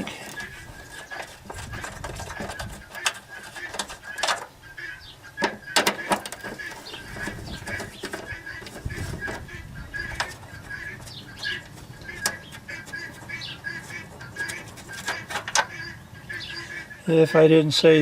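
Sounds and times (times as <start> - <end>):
hand tools clicking and knocking: 0.0 - 4.5, 5.4 - 9.4, 10.0 - 15.7
birds chirping: 0.0 - 18.0.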